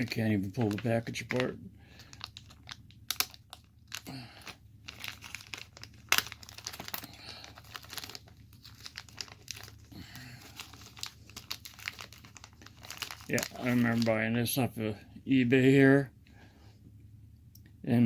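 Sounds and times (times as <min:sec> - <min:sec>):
packaging crinkling and tearing: 0:00.0 - 0:14.2.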